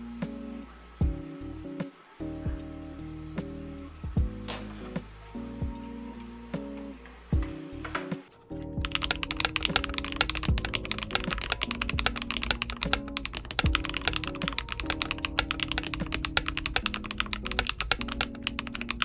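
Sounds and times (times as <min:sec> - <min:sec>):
guitar music: 0:00.0 - 0:19.0
mechanical keyboard typing: 0:08.8 - 0:19.0.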